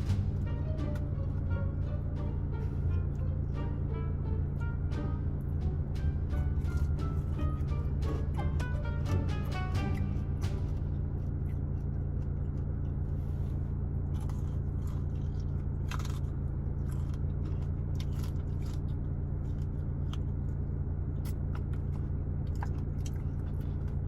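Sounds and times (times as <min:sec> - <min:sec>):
low hum: 0:00.0 - 0:24.0
crunchy chewing: 0:09.8 - 0:24.0.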